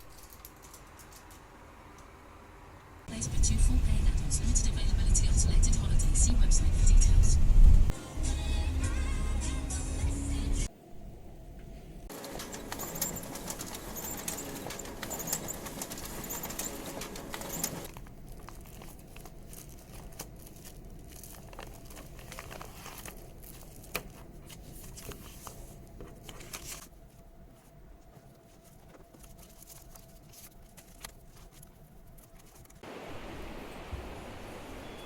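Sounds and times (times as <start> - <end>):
faint crinkling: 12.5 - 32.8.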